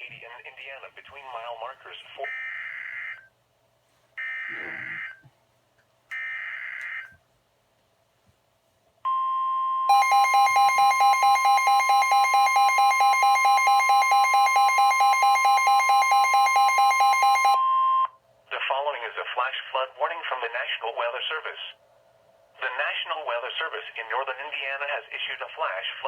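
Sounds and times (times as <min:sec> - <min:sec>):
steady warning alarm tone: 0:04.2 - 0:05.2, 0:09.1 - 0:18.1
rapid alarm beeping: 0:09.9 - 0:18.1.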